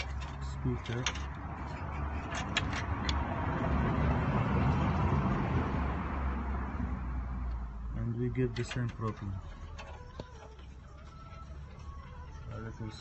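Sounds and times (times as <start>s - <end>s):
vehicle rushing noise: 1.3s - 7.8s.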